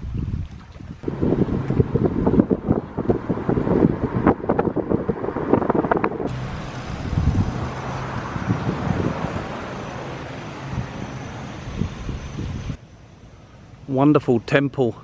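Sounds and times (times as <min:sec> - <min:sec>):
wind buffeting microphone: 0:00.0 - 0:12.8
vehicle driving on road: 0:01.0 - 0:13.8.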